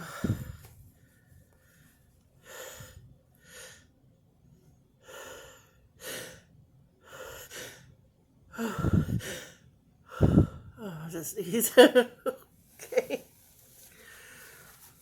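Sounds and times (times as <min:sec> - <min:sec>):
woman gasping: 0:00.0 - 0:00.7, 0:08.6 - 0:11.1.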